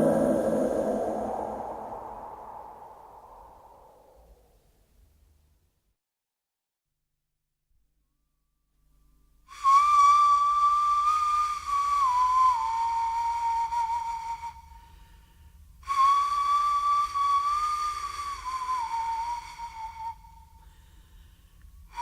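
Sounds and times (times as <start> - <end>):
breathy flute notes: 0.0 - 3.6, 9.5 - 22.0.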